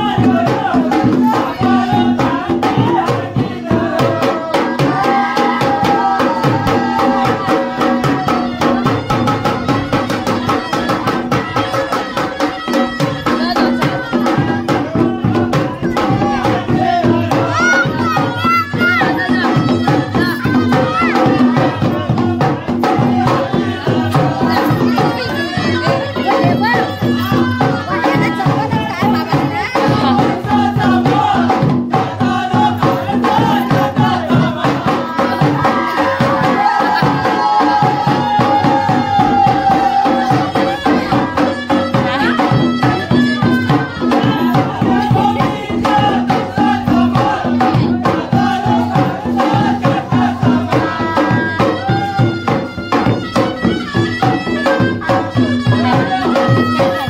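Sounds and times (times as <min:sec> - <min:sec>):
fast percussion strokes: 0:00.0 - 0:57.0.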